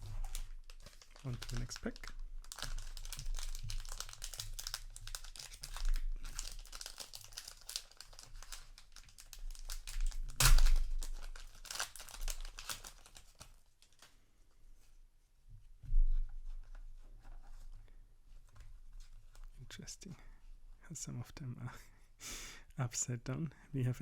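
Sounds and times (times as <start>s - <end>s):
wrapper ripping open: 0.0s - 14.1s
wrapper crinkling: 0.0s - 14.2s.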